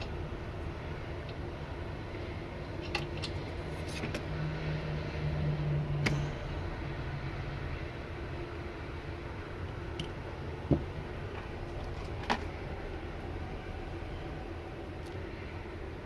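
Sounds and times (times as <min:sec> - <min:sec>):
low hum: 0:00.0 - 0:16.0
low rumble: 0:05.0 - 0:15.0.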